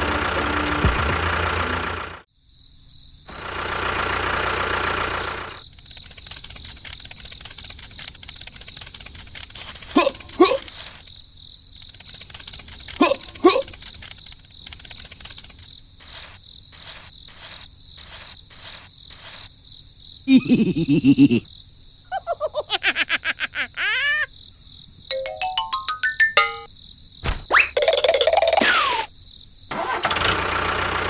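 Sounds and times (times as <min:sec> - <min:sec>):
crickets chirring: 0:05.5 - 0:25.1, 0:29.1 - 0:29.7
quick falling electronic chirps: 0:25.1 - 0:27.6.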